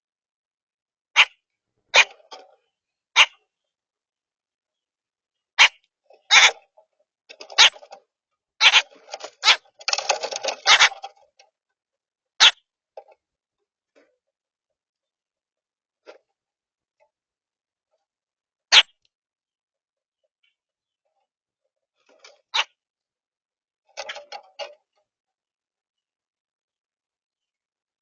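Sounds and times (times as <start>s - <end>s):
grackles harsh chack calls: 1.2s - 1.4s, 3.2s - 3.4s, 5.6s - 6.6s, 8.6s - 11.1s, 12.4s - 12.6s, 18.7s - 18.9s.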